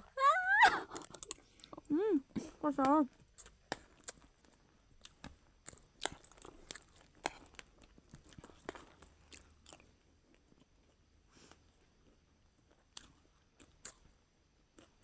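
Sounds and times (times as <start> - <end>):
crunching puffed rice snack: 3.1 - 15.0.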